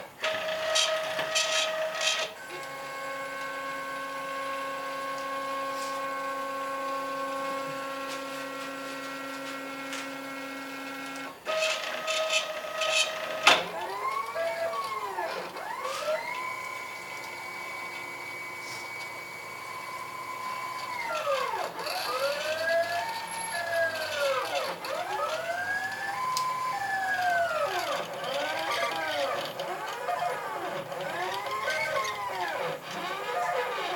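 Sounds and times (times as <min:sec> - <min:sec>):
stepper motors whining: 0:11.0 - 0:33.9.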